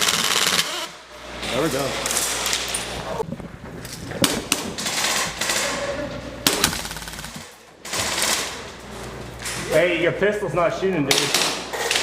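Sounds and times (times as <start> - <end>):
airsoft guns firing bursts: 0.0 - 0.9, 6.5 - 8.6
sharp cracks: 6.4 - 8.6.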